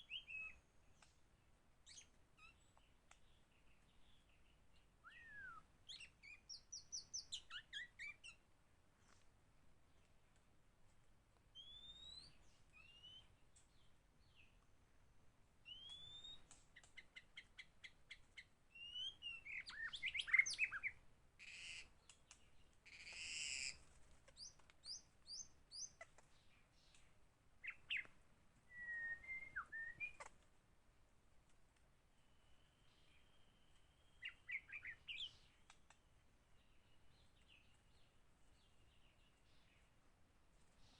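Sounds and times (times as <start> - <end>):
bird singing whistles and trills: 0.0 - 0.6, 5.0 - 8.4, 11.6 - 13.3, 15.7 - 16.4, 18.8 - 21.0, 28.7 - 30.2, 32.3 - 35.5.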